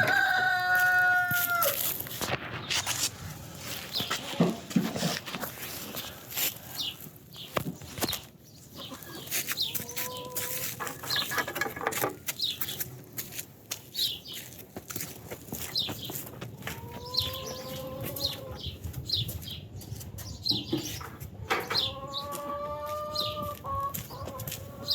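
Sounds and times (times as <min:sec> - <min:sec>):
chickens chirping: 0:03.6 - 0:13.0, 0:13.9 - 0:24.9
rustling and knocking: 0:10.6 - 0:12.4.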